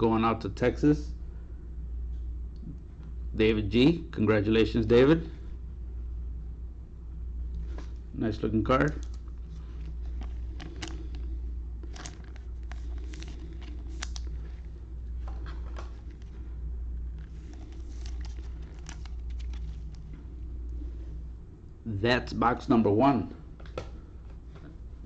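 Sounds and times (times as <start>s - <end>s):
steady low hum: 0.0s - 25.0s
cards clicking and rustling: 8.8s - 16.4s, 17.2s - 20.0s.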